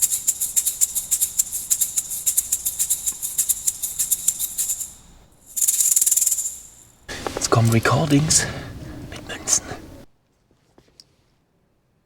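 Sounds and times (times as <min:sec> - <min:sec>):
shaker rattling: 0:00.0 - 0:08.3.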